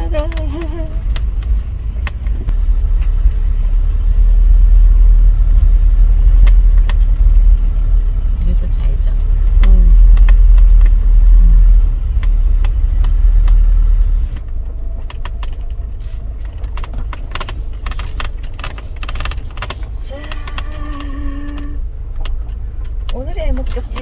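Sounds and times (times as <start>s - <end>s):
van engine and road rumble: 0.0s - 24.0s
clicks and crackles: 14.3s - 24.0s.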